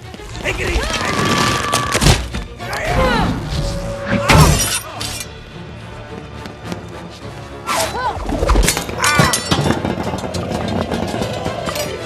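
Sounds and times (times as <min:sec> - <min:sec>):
film music: 0:00.0 - 0:12.0.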